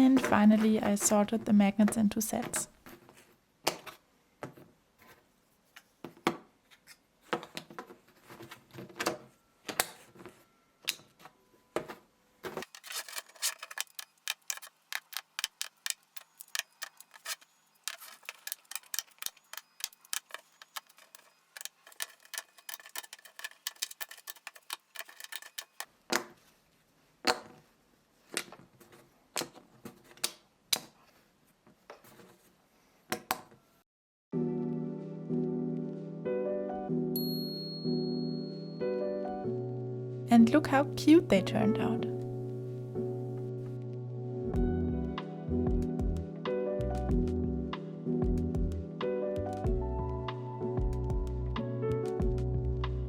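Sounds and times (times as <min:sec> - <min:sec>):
plastic magnets clicking: 0:12.6 - 0:25.9.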